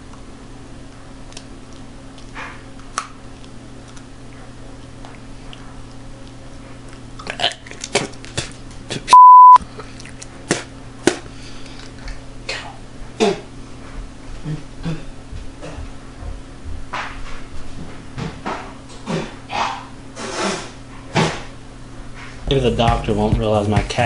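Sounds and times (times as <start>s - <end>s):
low room hum: 0.0s - 24.0s
crayon being chewed: 0.9s - 8.8s, 9.8s - 11.2s
censor bleep: 9.1s - 9.6s.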